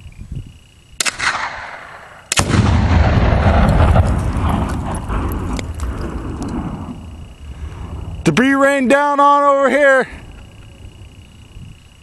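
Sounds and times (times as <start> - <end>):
gunshot: 1.0 - 5.3
loud explosion with rumble: 1.2 - 7.2.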